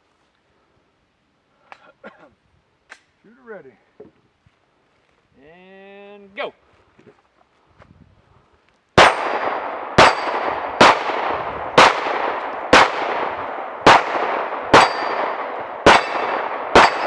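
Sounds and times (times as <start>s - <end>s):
gunshots with ringing echo: 9.0s - 17.0s.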